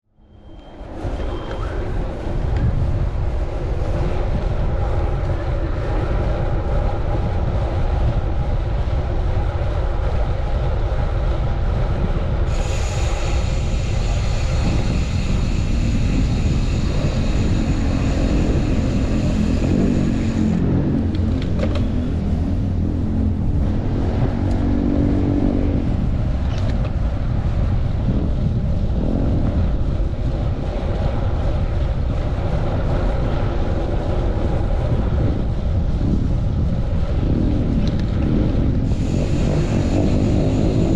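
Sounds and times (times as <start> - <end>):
high whine: 0.1 - 40.9
low engine-like hum: 0.1 - 40.9
wind buffeting microphone: 0.3 - 40.9
traffic passing: 12.5 - 28.0.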